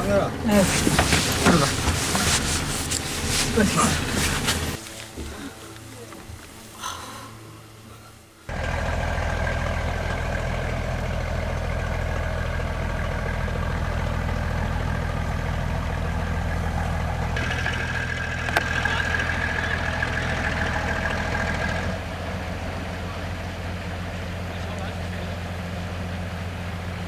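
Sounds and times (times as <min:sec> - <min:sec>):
boat engine droning: 0:00.0 - 0:27.0.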